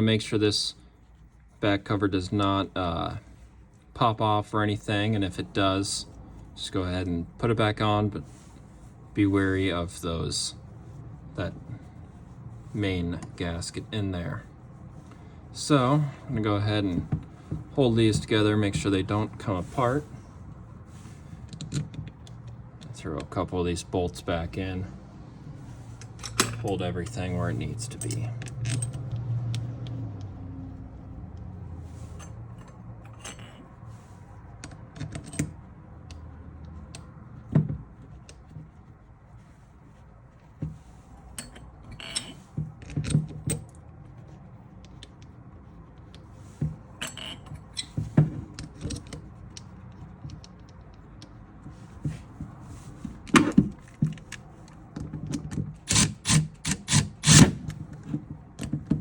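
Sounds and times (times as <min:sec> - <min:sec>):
metal clicks of tools and bolts: 0:21.4 - 0:23.3, 0:26.0 - 0:27.2, 0:27.8 - 0:30.3, 0:32.1 - 0:33.7, 0:41.3 - 0:43.8, 0:47.0 - 0:51.4.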